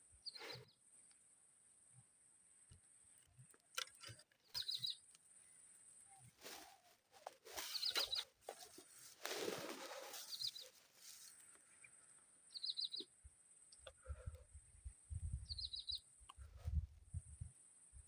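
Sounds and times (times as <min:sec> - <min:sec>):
bird chirping: 0:04.4 - 0:06.9, 0:07.5 - 0:08.8, 0:09.6 - 0:13.9, 0:15.3 - 0:16.4
rustling: 0:06.4 - 0:11.5.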